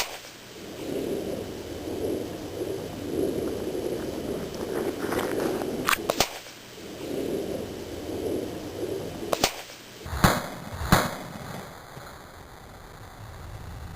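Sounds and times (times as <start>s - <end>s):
air rifle firing: 0.0s - 0.4s, 5.9s - 6.6s, 9.3s - 11.6s.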